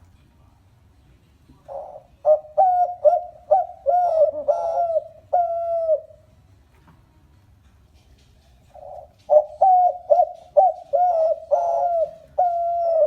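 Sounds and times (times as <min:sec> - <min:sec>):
dove cooing: 0:01.7 - 0:06.3, 0:08.7 - 0:13.0.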